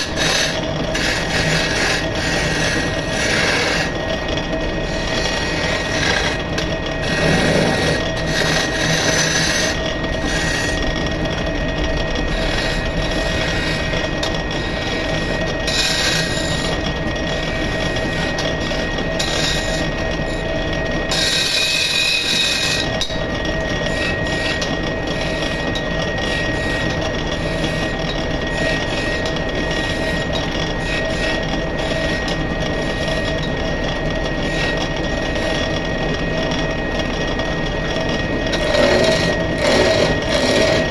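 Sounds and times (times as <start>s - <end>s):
chisel hissing on spinning wood: 0.0s - 4.0s, 4.9s - 10.9s, 12.3s - 13.9s, 14.6s - 16.8s, 17.4s - 20.4s, 21.1s - 23.0s, 23.9s - 33.3s, 38.6s - 40.9s
wood lathe humming: 0.0s - 40.9s.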